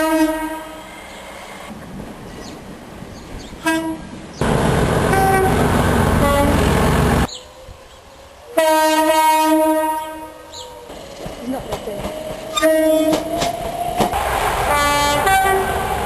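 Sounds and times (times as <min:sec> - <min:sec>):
train horn: 0:00.0 - 0:00.9, 0:03.6 - 0:04.1, 0:05.1 - 0:05.6, 0:06.2 - 0:06.9, 0:08.6 - 0:10.7, 0:12.5 - 0:13.3, 0:14.6 - 0:15.8
loud noise: 0:13.1 - 0:16.0.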